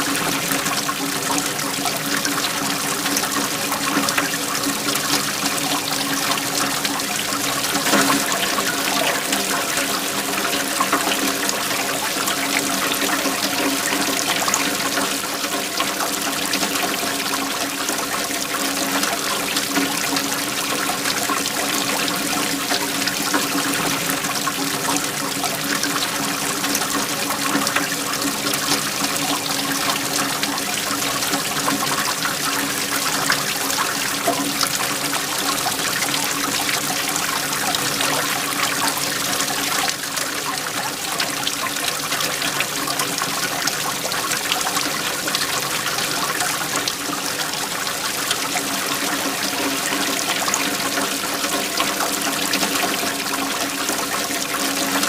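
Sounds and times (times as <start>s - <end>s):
waterfall rushing: 0.0s - 14.9s, 21.8s - 41.1s.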